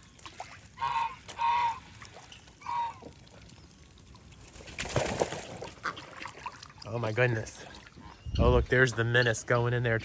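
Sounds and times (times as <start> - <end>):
water splashing: 0.0 - 8.2
goose honking: 0.7 - 3.2.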